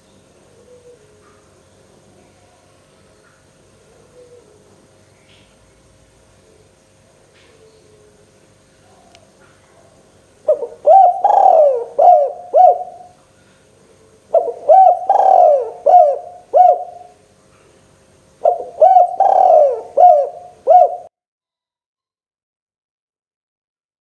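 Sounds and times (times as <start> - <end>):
dove cooing: 0.5 - 1.4, 3.8 - 4.9, 7.4 - 13.2, 13.9 - 17.2, 18.4 - 21.1.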